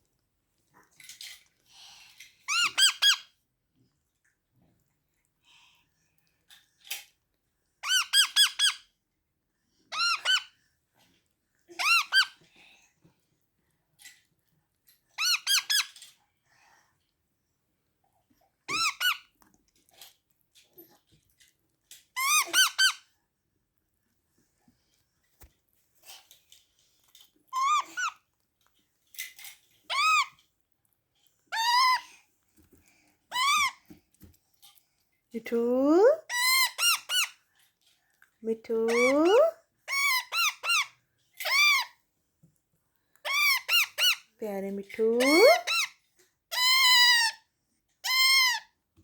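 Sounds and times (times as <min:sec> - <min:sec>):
parrot chirping: 0:02.5 - 0:03.2, 0:07.8 - 0:08.8, 0:09.9 - 0:10.5, 0:11.8 - 0:12.3, 0:15.2 - 0:15.9, 0:22.2 - 0:23.0, 0:27.5 - 0:28.2, 0:29.9 - 0:30.3, 0:33.3 - 0:33.8, 0:36.3 - 0:37.4, 0:39.9 - 0:41.9, 0:43.2 - 0:44.3, 0:46.5 - 0:47.4, 0:48.0 - 0:48.7.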